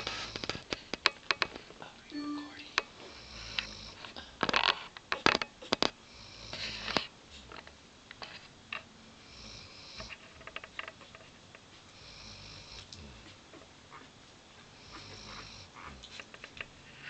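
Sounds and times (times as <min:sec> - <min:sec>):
dog snoring: 0:03.1 - 0:04.1, 0:06.0 - 0:07.1, 0:09.2 - 0:10.2, 0:11.9 - 0:13.4, 0:14.8 - 0:16.2.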